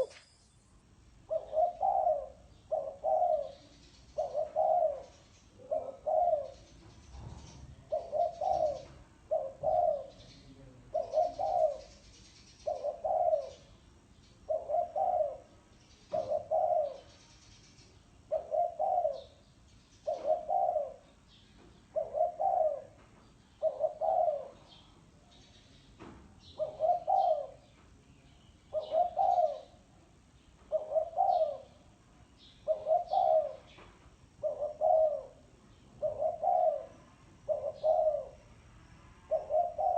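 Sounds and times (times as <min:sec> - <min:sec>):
small birds chirping: 0:00.0 - 0:38.6
dove cooing: 0:01.2 - 0:06.7, 0:07.8 - 0:10.3, 0:10.9 - 0:13.7, 0:14.5 - 0:17.2, 0:18.3 - 0:21.2, 0:21.9 - 0:23.0, 0:23.6 - 0:24.8, 0:26.4 - 0:27.7, 0:28.7 - 0:29.9, 0:30.6 - 0:32.0, 0:32.6 - 0:38.5, 0:39.3 - 0:39.9.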